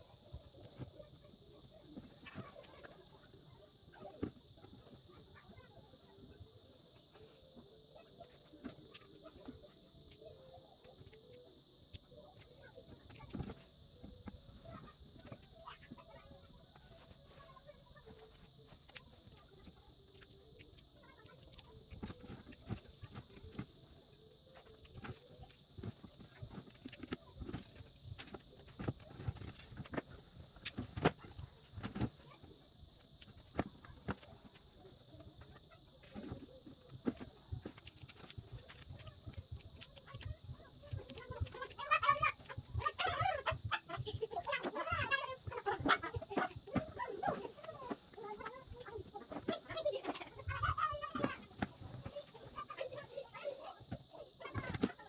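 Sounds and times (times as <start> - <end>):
chicken clucking: 41.0 - 51.4.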